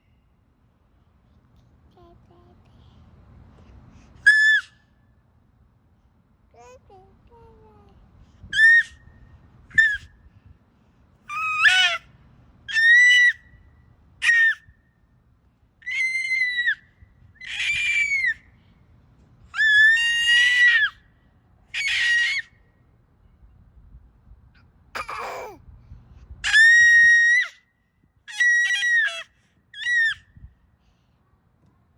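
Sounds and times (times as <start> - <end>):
young child squealing: 4.2 - 4.8, 8.5 - 9.0, 9.7 - 10.1, 11.3 - 12.0, 12.7 - 13.4, 14.2 - 14.6, 15.8 - 16.8, 17.4 - 18.4, 19.5 - 21.0, 21.7 - 22.5, 26.4 - 27.6, 28.3 - 30.3.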